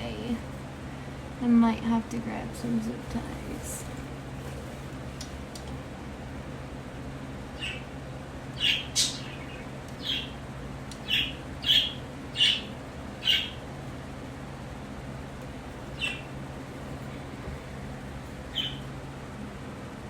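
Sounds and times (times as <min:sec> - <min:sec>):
steady low hum: 0:00.0 - 0:20.0
birds chirping: 0:07.5 - 0:13.7, 0:15.8 - 0:16.5, 0:18.3 - 0:19.0.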